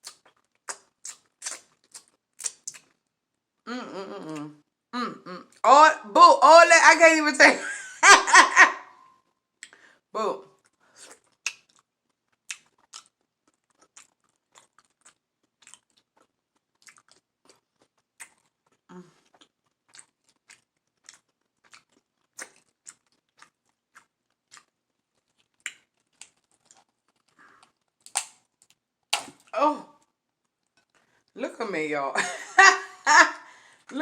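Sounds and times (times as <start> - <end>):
close chewing mouth smacks: 0.0 - 3.0, 9.6 - 9.8, 10.6 - 29.5.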